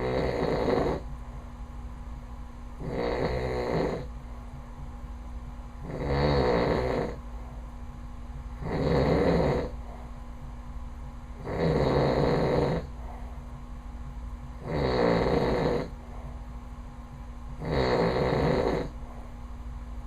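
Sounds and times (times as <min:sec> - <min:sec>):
man snoring loudly: 0:00.0 - 0:01.0, 0:02.8 - 0:04.1, 0:05.8 - 0:07.2, 0:08.6 - 0:09.8, 0:11.4 - 0:12.9, 0:14.6 - 0:15.9, 0:17.6 - 0:18.9.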